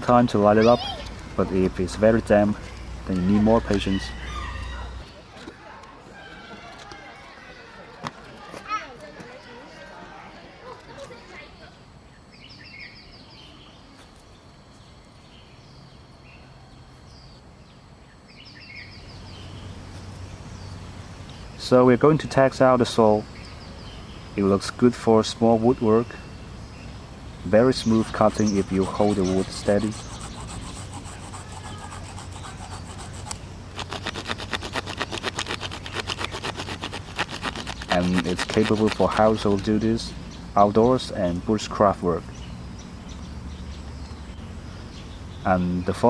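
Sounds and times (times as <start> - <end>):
outdoor background noise: 0.0 - 46.0
songbird singing: 12.0 - 22.3, 23.0 - 24.7, 25.8 - 46.0
small saw sawing wood: 27.8 - 39.7.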